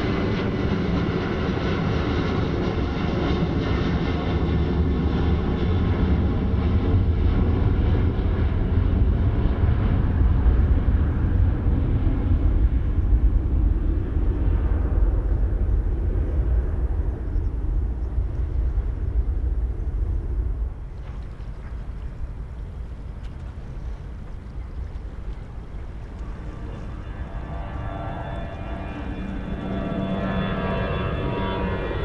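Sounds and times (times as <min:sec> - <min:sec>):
jet engines rumbling: 0:00.0 - 0:32.0.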